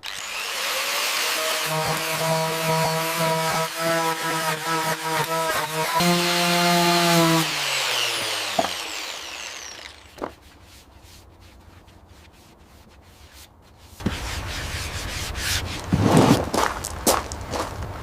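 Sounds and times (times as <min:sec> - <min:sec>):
power tool whine: 0:00.0 - 0:10.3
rubbing and scraping on wood: 0:09.6 - 0:16.9.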